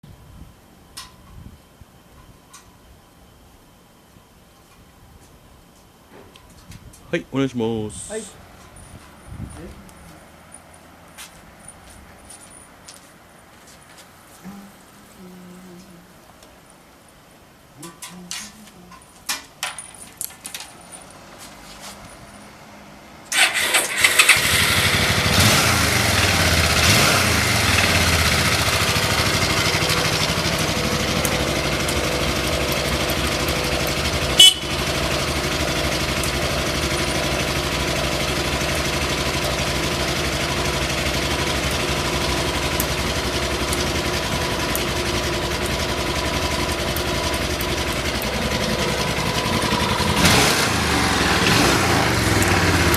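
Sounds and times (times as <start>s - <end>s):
motorcycle engine starting and idling: 18.0s - 52.9s.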